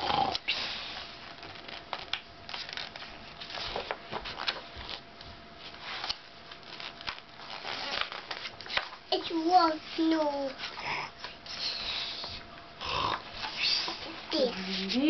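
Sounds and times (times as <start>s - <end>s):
paper pages rustling: 1.2s - 5.0s, 5.6s - 9.0s.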